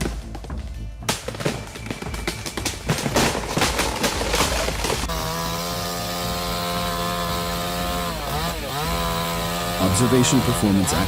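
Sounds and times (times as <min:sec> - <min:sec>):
sharp knocks and cracks: 0:01.0 - 0:05.1
chainsaw running at high revs: 0:04.8 - 0:11.0.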